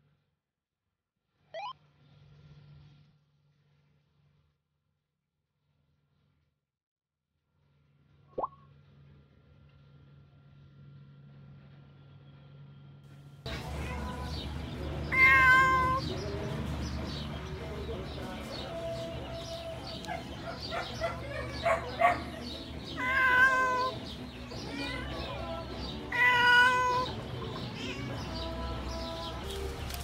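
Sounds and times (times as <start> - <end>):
cat meowing: 15.1 - 16.0, 22.9 - 24.0, 24.6 - 25.2, 26.1 - 28.4.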